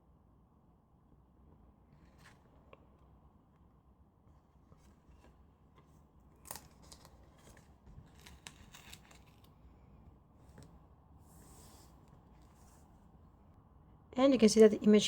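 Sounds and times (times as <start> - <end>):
paper clicks and rustles: 4.7 - 9.6.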